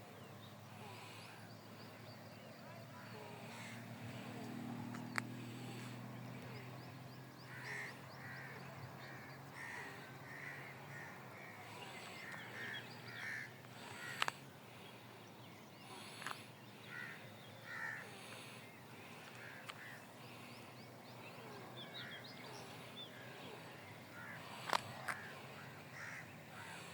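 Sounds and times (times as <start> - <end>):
crow cawing: 7.5 - 14.3, 16.9 - 18.5, 19.1 - 20.0, 24.1 - 26.9.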